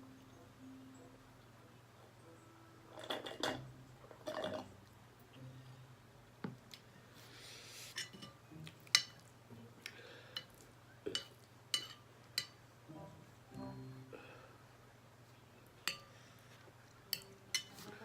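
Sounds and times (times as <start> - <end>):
utensil clinking against dish: 11.1 - 12.6, 15.8 - 16.2, 17.1 - 17.8.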